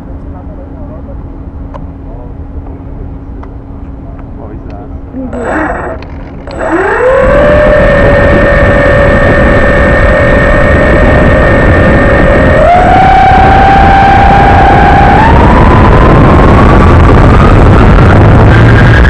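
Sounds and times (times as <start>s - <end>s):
model aircraft propeller motors whining: 5.1s - 19.0s.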